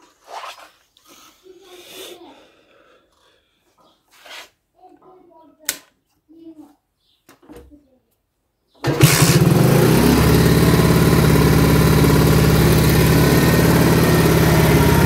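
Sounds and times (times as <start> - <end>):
moped engine starting and idling: 8.8 - 15.0.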